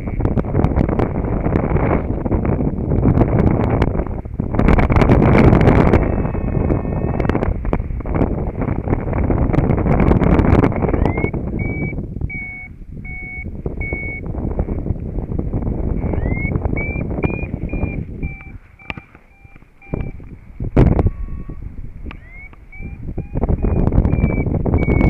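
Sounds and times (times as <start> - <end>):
wind buffeting microphone: 0.0 - 25.0
variometer beeping high tones: 5.4 - 7.4, 10.6 - 14.3, 16.0 - 25.0.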